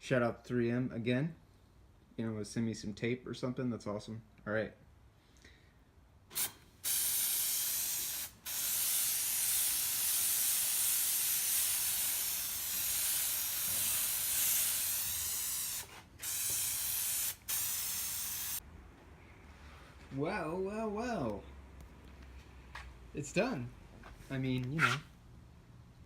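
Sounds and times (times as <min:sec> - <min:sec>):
aerosol can spraying: 0:06.3 - 0:18.6.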